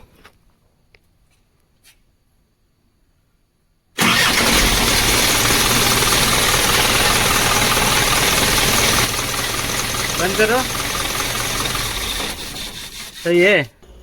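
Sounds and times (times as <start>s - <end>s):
diesel engine starting and running: 4.0s - 14.0s.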